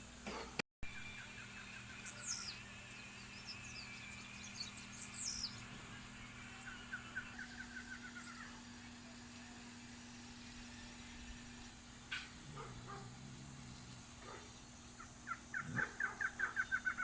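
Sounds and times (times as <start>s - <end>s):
faint steady hum: 0.0s - 17.0s
rapid repeated bird notes: 0.2s - 17.0s
bird chirps: 0.9s - 8.7s, 14.3s - 17.0s.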